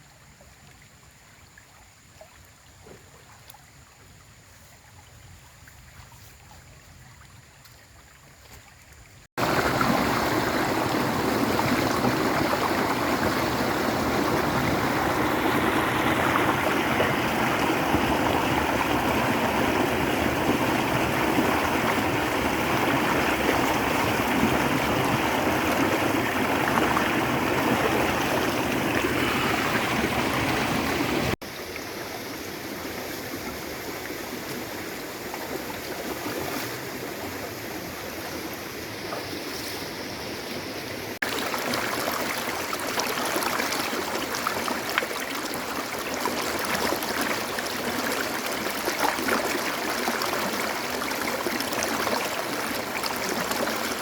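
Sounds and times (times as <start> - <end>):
stream flowing: 0.0 - 54.0.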